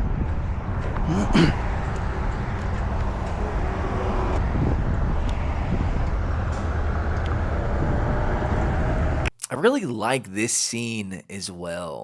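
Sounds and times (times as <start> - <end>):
street traffic rumble: 0.0 - 9.3.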